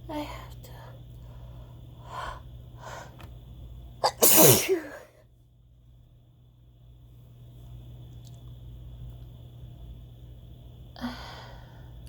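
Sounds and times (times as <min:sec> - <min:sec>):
steady low hum: 0:00.0 - 0:12.0
person sneezing: 0:04.0 - 0:05.1.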